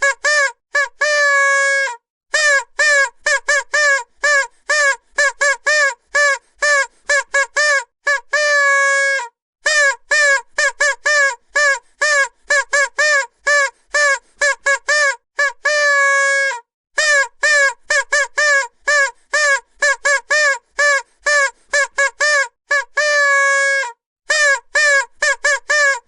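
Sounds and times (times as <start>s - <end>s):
vuvuzela toots: 0.0s - 26.0s.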